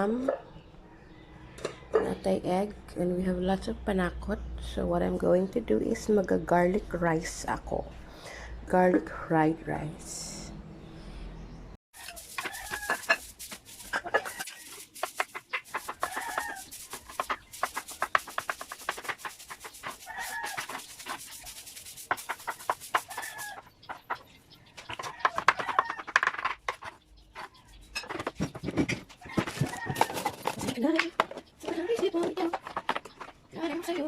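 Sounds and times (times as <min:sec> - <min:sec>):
chickens clucking: 0:12.0 - 0:18.8, 0:19.6 - 0:34.0.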